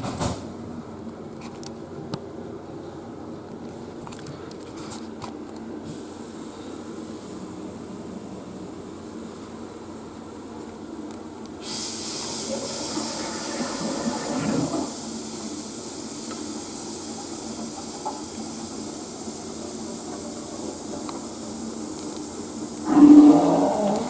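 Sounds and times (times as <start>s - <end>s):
water rushing through pipes: 11.7s - 24.0s.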